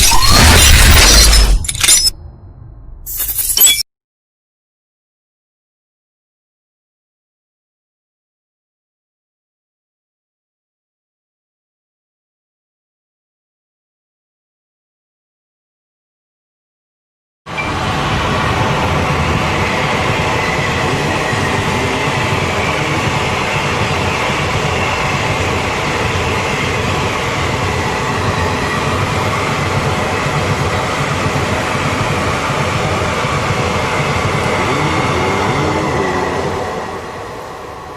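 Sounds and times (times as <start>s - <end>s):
train wheels rumbling and rattling: 17.6s - 37.9s.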